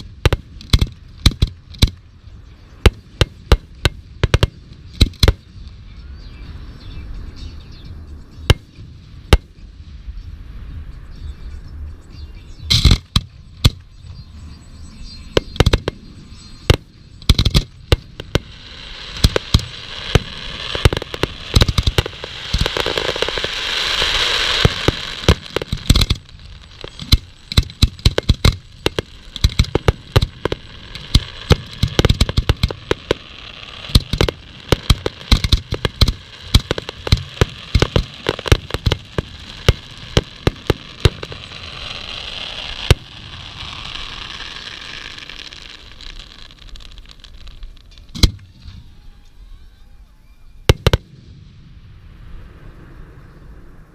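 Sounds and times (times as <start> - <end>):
fireworks bangs: 0.0 - 2.1, 2.7 - 5.6, 12.7 - 14.0, 15.2 - 48.8, 50.6 - 53.9
fireworks crackling hiss: 0.0 - 5.9, 12.7 - 48.9, 50.5 - 53.9.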